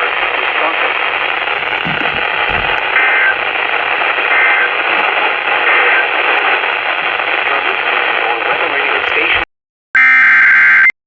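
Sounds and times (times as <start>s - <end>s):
radio static hiss: 0.0s - 9.5s
two-tone data bursts: 1.6s - 6.2s.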